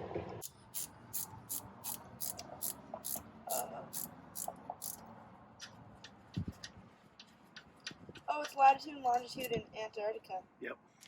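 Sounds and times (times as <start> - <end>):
ratchet wrench clicking: 0.4 - 5.0.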